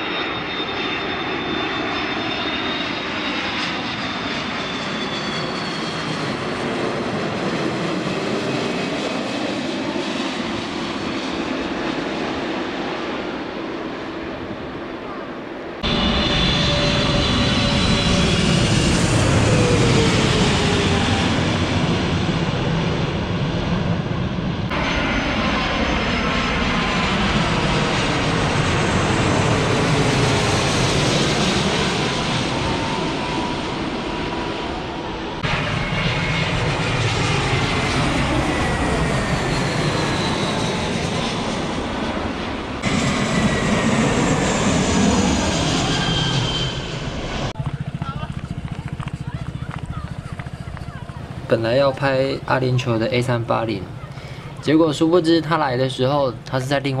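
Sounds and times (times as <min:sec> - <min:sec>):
jet airliners passing overhead: 0:00.0 - 0:57.0.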